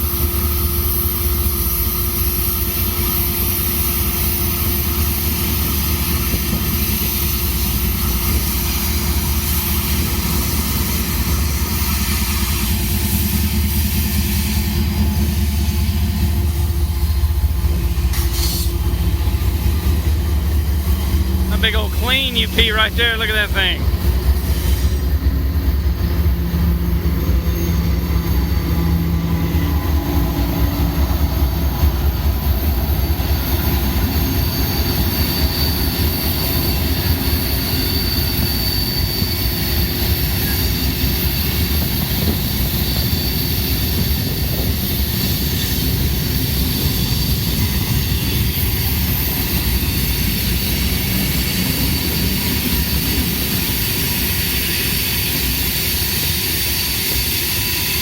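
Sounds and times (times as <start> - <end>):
train wheels rumbling on rails: 0.0 - 21.5, 23.8 - 58.0
high wheel squeal: 34.1 - 58.0.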